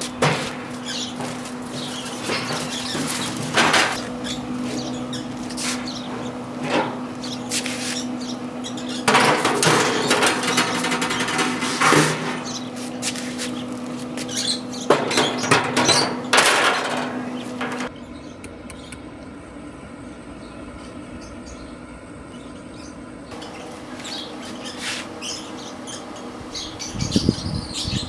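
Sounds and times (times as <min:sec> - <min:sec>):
rustling or scraping: 0:00.0 - 0:17.9, 0:23.4 - 0:25.2
grill fan humming: 0:00.0 - 0:28.0.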